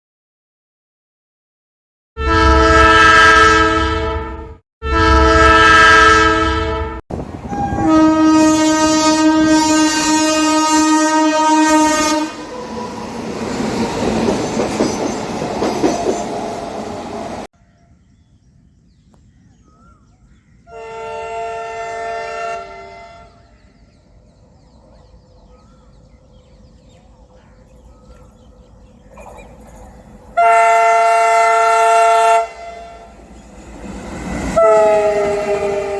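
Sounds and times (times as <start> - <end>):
locomotive air horn blasts: 2.2 - 12.6, 20.7 - 23.5, 30.4 - 33.2, 34.6 - 35.9
train rumbling and clattering past: 7.1 - 10.8, 11.6 - 17.5, 23.6 - 35.9.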